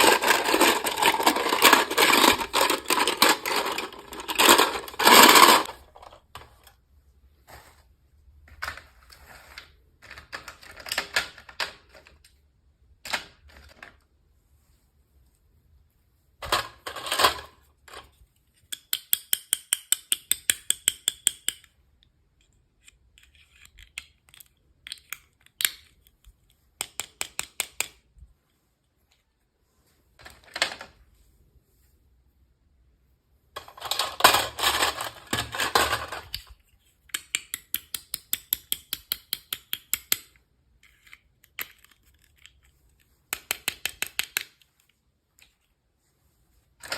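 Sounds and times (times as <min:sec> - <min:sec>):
plastic packaging crinkling: 0:00.0 - 0:05.7.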